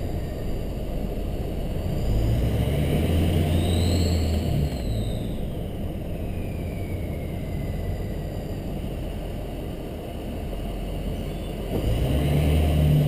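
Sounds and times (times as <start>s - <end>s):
diesel engine rumble: 0.0s - 13.0s
turbocharger whistle falling: 3.5s - 5.5s.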